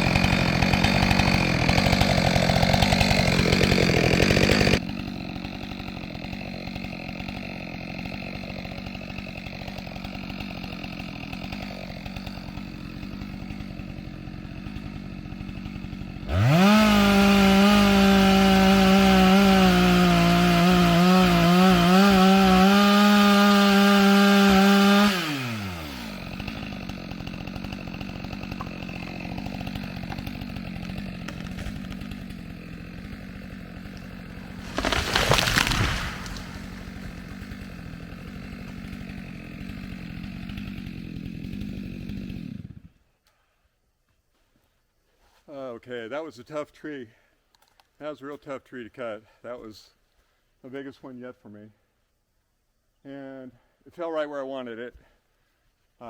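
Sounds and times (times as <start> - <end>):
chainsaw cutting and revving: 0.0 - 43.0.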